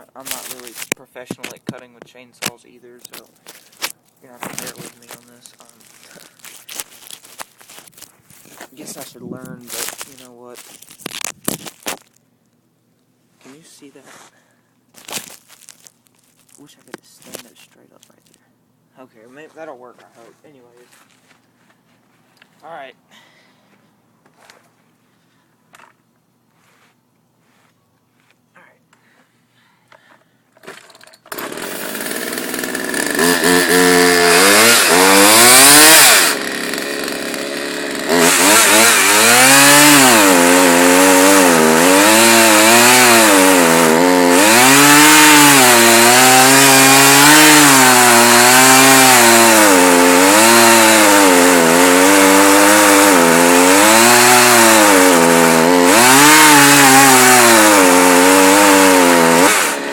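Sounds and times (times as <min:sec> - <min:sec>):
chainsaw cutting wood: 0:00.2 - 0:01.8, 0:02.4 - 0:09.0, 0:09.6 - 0:12.2, 0:30.6 - 0:59.9.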